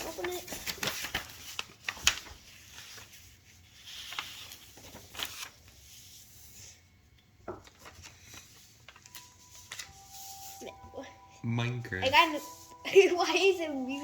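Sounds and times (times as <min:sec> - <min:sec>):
paper rustling and rubbing: 0:00.0 - 0:10.8.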